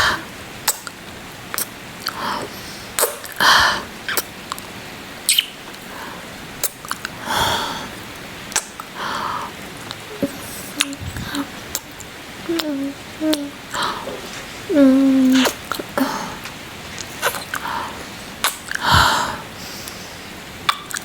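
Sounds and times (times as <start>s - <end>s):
soft breaths: 7.1s - 8.1s, 8.8s - 11.8s, 12.4s - 20.4s
wet lip smacks: 8.5s - 8.9s, 9.9s - 12.7s, 20.7s - 21.0s.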